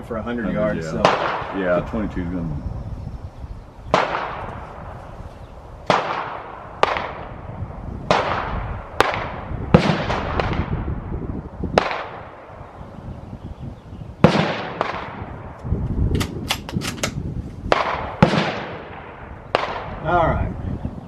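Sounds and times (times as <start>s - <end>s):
gunshots echoing: 0.9s - 1.8s, 3.9s - 4.9s, 5.9s - 7.4s, 8.1s - 10.8s, 11.8s - 12.5s, 14.2s - 15.3s, 17.7s - 20.0s
sharp clicks: 16.1s - 17.2s.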